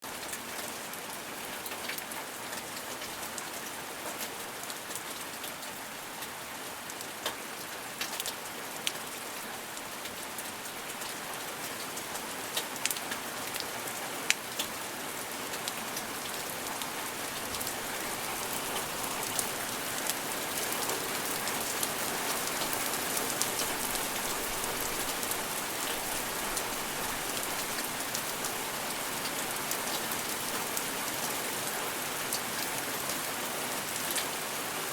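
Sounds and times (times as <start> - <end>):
rain hissing on a surface: 0.0 - 34.9.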